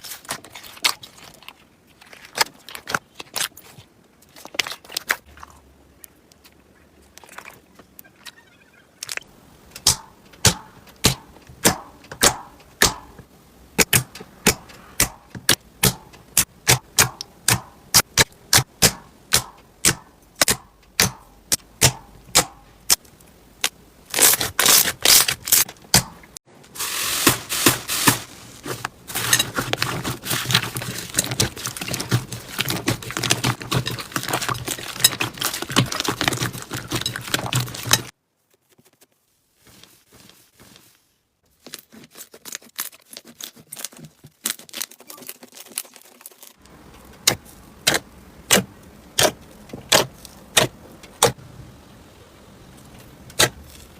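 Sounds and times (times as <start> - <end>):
slime crackling and popping: 23.6 - 26.0, 26.8 - 38.1, 42.1 - 51.4.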